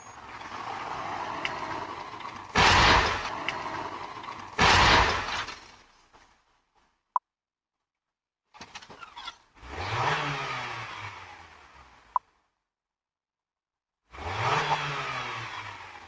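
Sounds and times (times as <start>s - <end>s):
vehicle crash impacts: 0.0s - 6.4s.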